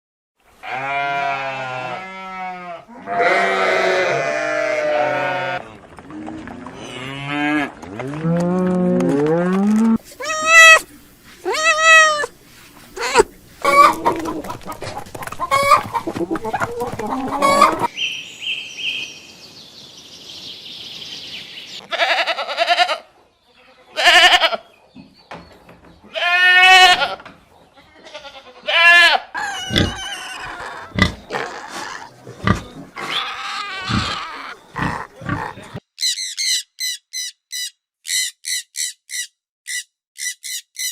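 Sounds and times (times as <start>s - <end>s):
goats bleating: 0.6s - 5.7s, 10.2s - 12.3s, 21.8s - 23.1s, 23.9s - 24.6s, 26.1s - 27.2s, 28.0s - 35.8s
farm animal calls: 0.6s - 5.8s, 6.8s - 17.9s, 21.8s - 24.7s, 27.8s - 40.9s.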